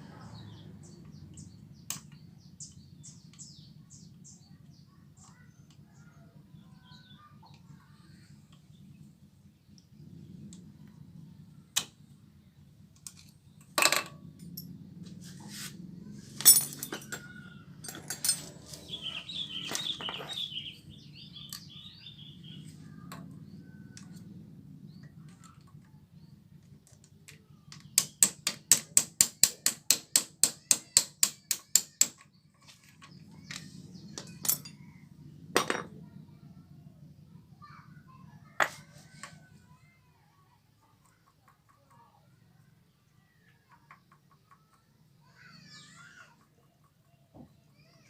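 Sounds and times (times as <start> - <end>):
tools clinking on metal parts: 13.1 - 14.7, 16.4 - 19.0, 33.0 - 34.8.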